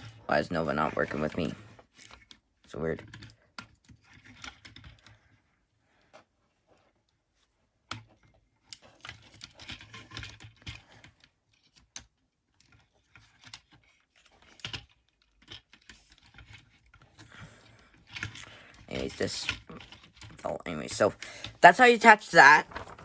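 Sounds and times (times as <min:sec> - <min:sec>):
plastic toy parts clicking: 0:07.9 - 0:17.2, 0:17.9 - 0:21.6.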